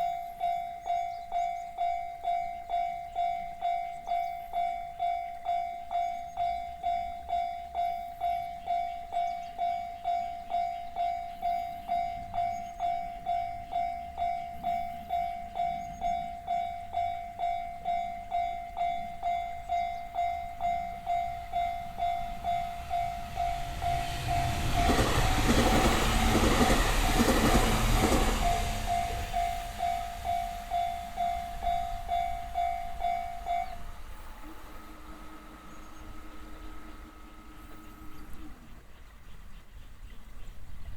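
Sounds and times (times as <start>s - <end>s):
level crossing bell dinging: 0.0s - 25.0s, 28.6s - 33.9s
train wheels clacking: 0.0s - 38.6s.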